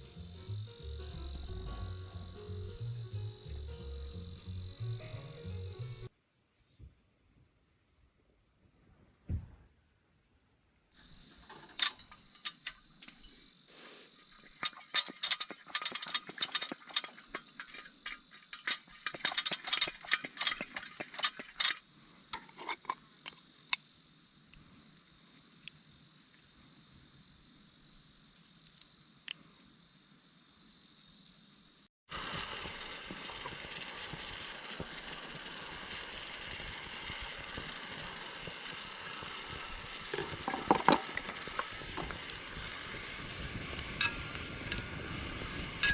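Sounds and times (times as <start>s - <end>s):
loud steady hiss: 0.0s - 6.1s, 32.1s - 45.9s
insects chirring: 0.0s - 7.2s, 9.6s - 45.9s
sharp clicks and knocks: 40.1s - 42.9s.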